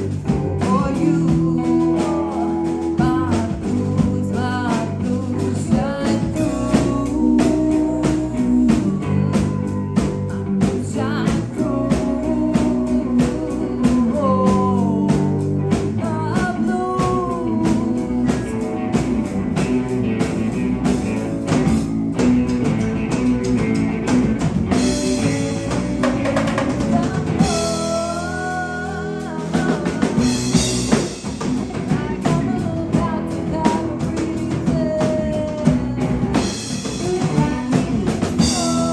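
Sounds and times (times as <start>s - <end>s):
bass guitar: 0.0s - 38.9s
drum kit: 0.0s - 38.9s
electric guitars: 0.0s - 38.9s.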